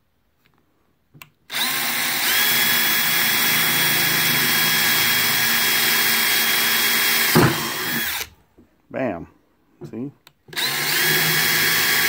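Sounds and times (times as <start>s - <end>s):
power drill whining: 1.5s - 8.4s, 10.5s - 12.0s.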